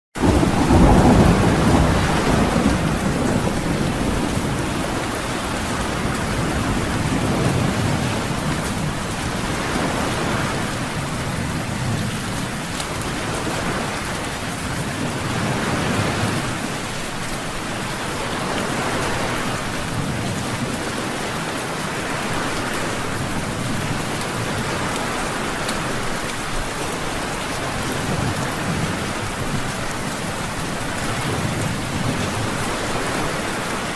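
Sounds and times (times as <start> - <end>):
low rumbling thunder: 0.2 - 16.9, 27.2 - 33.9
heavy rain: 0.2 - 33.9.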